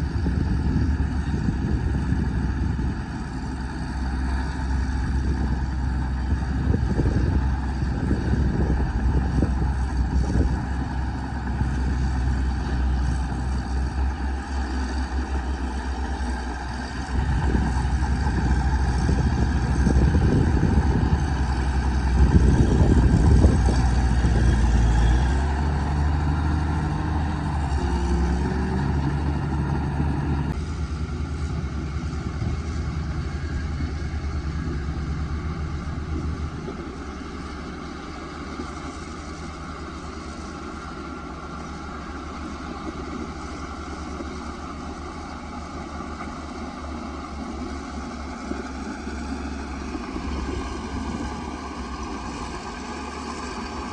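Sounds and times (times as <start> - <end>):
bulldozer diesel engine under load: 0.0 - 53.9.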